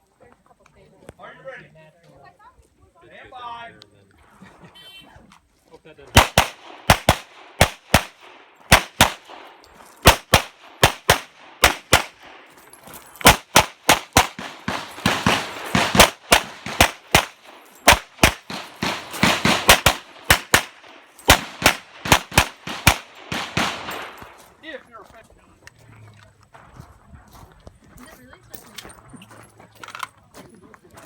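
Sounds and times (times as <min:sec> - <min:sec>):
handgun firing rapidly: 0:06.2 - 0:12.4, 0:13.2 - 0:24.3.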